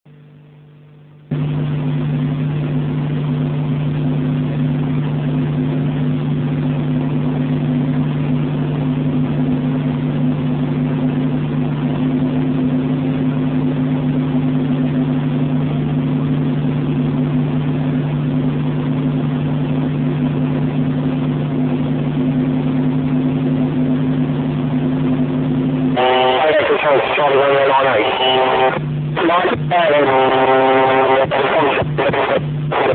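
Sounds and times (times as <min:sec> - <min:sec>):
helicopter engine and rotors drone: 0:23.0 - 0:32.9.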